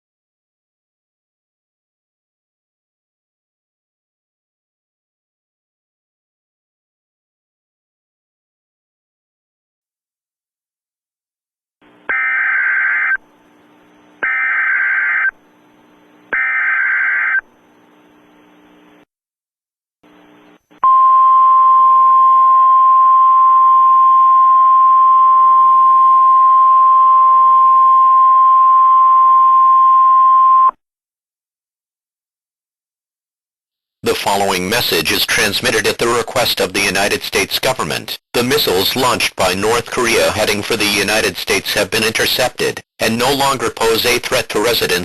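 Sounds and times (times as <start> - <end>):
faint broadcast hiss and hum: 13.2 - 14.2, 15.1 - 16.4, 17.1 - 19.1, 20.0 - 20.8.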